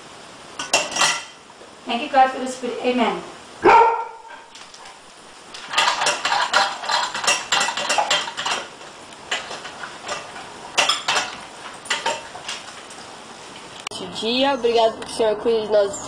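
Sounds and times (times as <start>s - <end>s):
kibble and bowls clinking: 5.6s - 13.0s.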